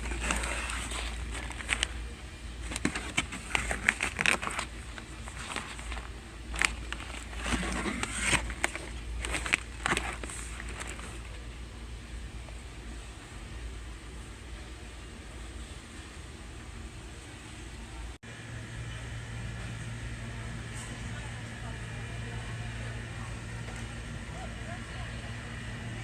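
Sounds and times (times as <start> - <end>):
clicks and knocks of goods handled: 0.0 - 11.4
low steady hum: 0.0 - 26.0.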